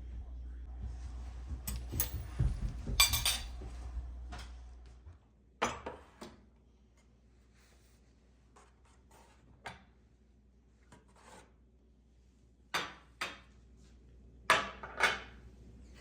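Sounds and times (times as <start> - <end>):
dishes clinking: 1.7 - 3.6
dishes and utensils scraping: 2.8 - 3.6.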